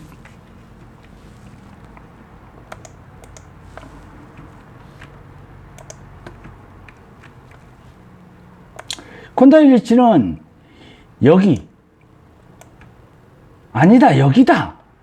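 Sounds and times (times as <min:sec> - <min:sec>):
faint light clicks: 0:00.0 - 0:05.2, 0:05.8 - 0:07.7, 0:08.8 - 0:09.1
low steady hum: 0:00.0 - 0:14.2.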